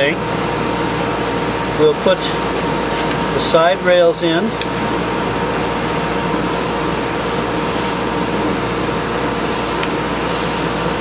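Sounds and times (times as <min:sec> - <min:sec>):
fan humming: 0:00.0 - 0:11.0.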